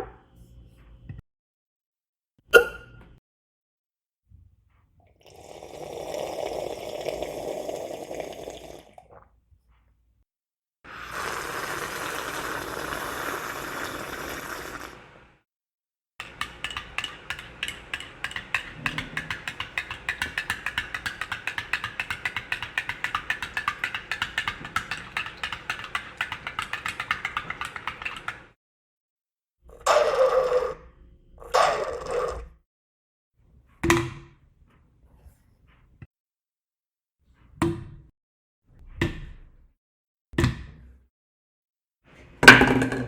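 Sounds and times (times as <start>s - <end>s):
steady hissing: 10.9s - 15.2s.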